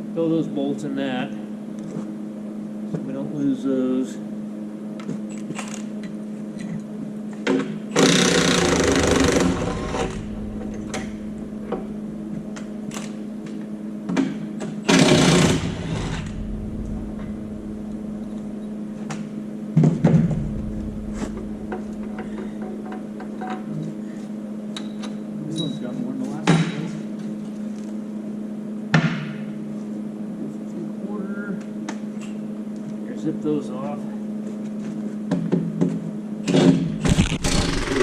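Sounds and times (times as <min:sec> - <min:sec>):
impact wrench hammering: 0:07.5 - 0:13.2, 0:14.1 - 0:17.4.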